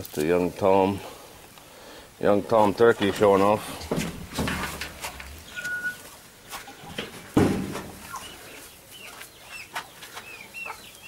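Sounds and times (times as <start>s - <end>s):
chickens clucking: 2.3s - 11.0s
short high peeps: 5.5s - 6.0s.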